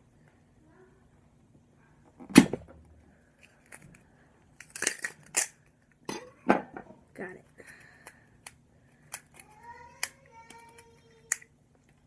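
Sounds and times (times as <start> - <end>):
plastic ball cracking and snapping: 4.6 - 5.8.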